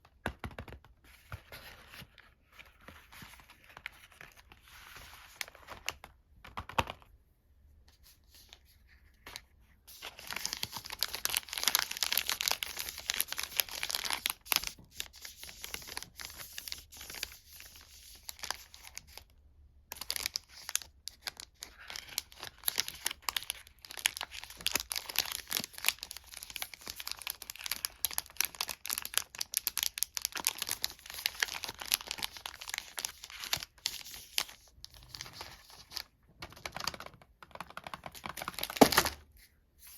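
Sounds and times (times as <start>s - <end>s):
sweet wrappers crinkling and tearing: 10.0s - 19.3s, 19.9s - 37.1s.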